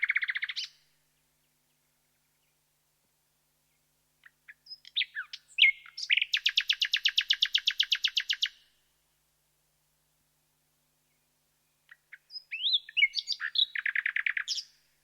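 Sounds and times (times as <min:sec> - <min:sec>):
nightingale singing: 0:00.0 - 0:02.6, 0:03.6 - 0:08.7, 0:11.0 - 0:15.0.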